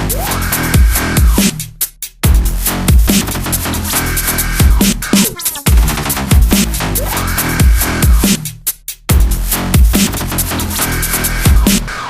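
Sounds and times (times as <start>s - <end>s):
heavy bass kicks: 2.2s - 3.5s, 5.7s - 8.4s, 9.1s - 10.2s
electronic dance music: 2.3s - 8.5s.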